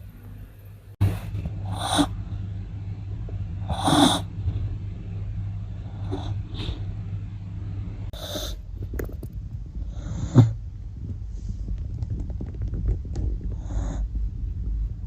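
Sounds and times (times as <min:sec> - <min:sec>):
dog snorting: 0:01.6 - 0:02.2, 0:03.6 - 0:04.3
dog snoring: 0:01.6 - 0:02.3, 0:03.6 - 0:04.3, 0:05.8 - 0:06.8.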